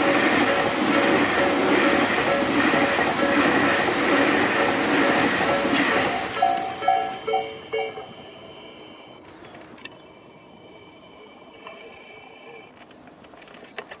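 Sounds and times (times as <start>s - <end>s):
level crossing warning bell: 0.0s - 9.2s.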